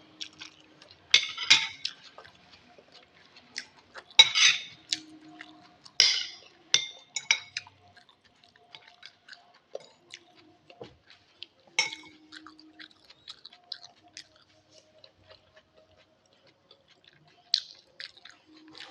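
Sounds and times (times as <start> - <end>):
chewing: 0.1 - 18.9
utensils clinking against bowl: 1.1 - 1.9, 4.2 - 4.9, 6.0 - 7.6, 11.8 - 12.3.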